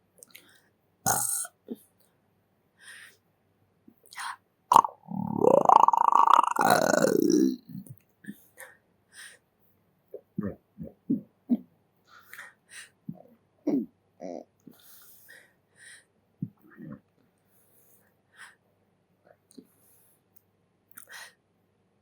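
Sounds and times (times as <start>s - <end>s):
long loud burp: 1.1s - 1.5s, 4.7s - 7.6s
mouth clicks: 1.1s - 1.5s, 4.7s - 7.6s
short small burps: 1.1s - 1.5s
breaths: 2.8s - 3.2s, 8.3s - 9.5s, 14.7s - 16.1s, 17.4s - 18.7s, 19.6s - 20.3s, 21.0s - 21.4s.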